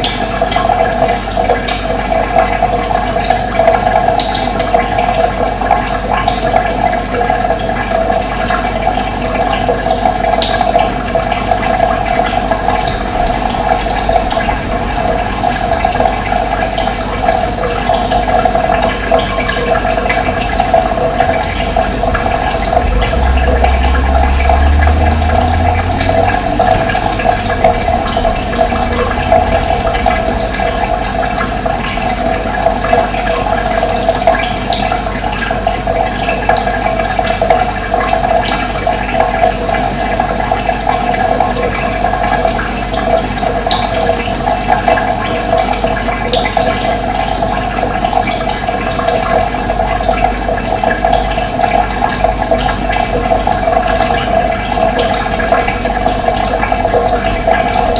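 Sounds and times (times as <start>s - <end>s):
running water rushing: 0.0s - 57.9s
low rumble: 11.8s - 18.4s, 19.5s - 34.3s.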